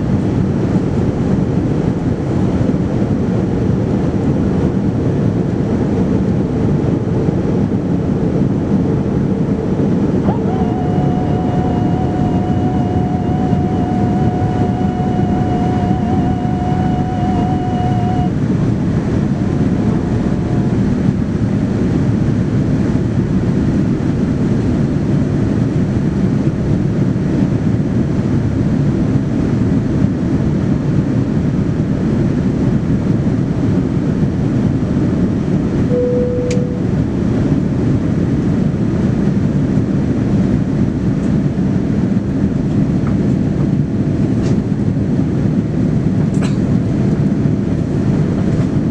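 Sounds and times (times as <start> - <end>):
jet engine and airflow rush: 0.0 - 48.9
thin wavering whine: 7.8 - 22.0, 35.9 - 37.2.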